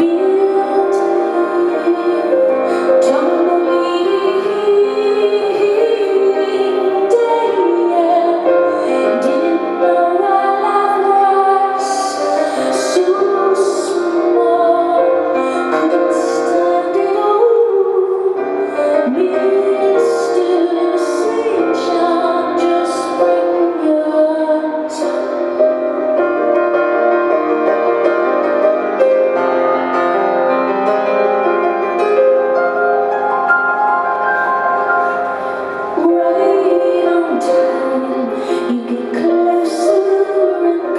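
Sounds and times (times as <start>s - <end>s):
woman singing: 0.0s - 25.6s, 35.9s - 40.9s
piano accompaniment: 0.0s - 40.9s.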